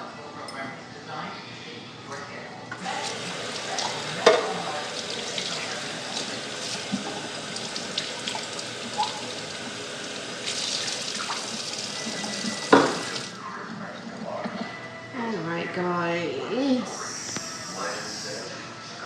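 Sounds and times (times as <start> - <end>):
tap water running into sink: 2.8 - 13.4.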